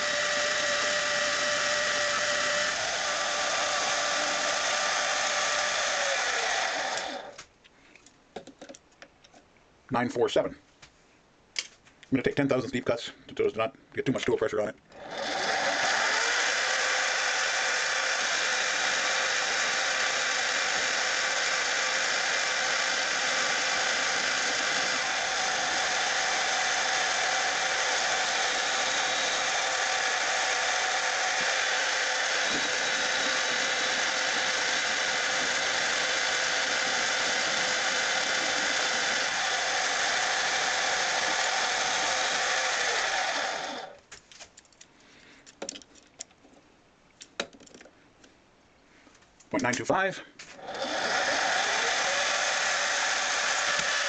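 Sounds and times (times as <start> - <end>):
metal lathe running: 0.0 - 7.4, 15.0 - 44.0, 50.6 - 54.0.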